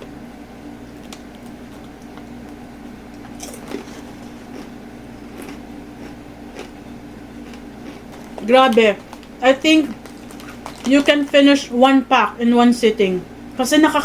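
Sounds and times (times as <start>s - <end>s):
steady low hum: 0.0s - 14.0s
person chewing crispy chips: 3.2s - 6.8s, 7.4s - 11.0s.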